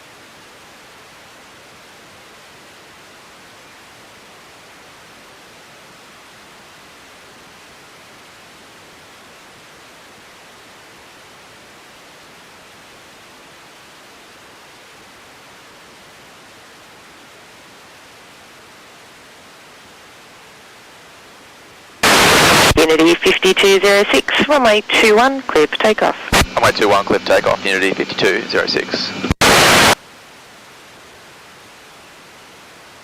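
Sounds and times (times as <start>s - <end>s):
radio static hiss: 22.0s - 30.0s.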